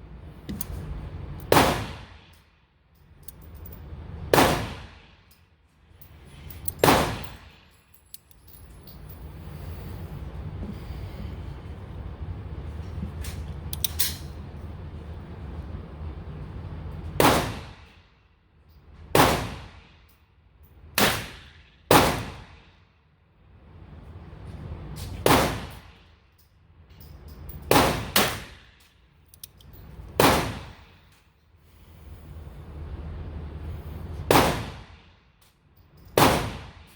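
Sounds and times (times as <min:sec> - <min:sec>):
gunshots echoing indoors: 0:04.3 - 0:05.2, 0:30.2 - 0:30.9, 0:34.3 - 0:35.1, 0:36.2 - 0:36.9.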